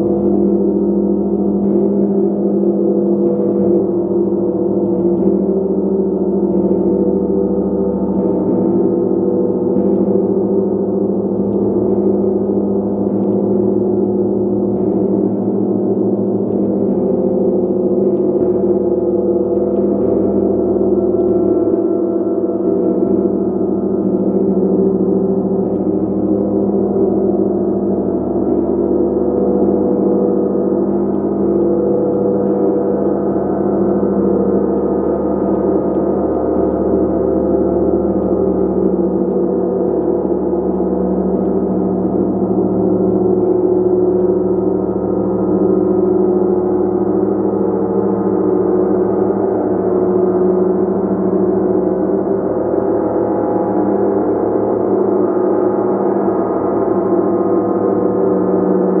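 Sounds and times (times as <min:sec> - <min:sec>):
gong shimmering wash: 0:00.0 - 0:59.0.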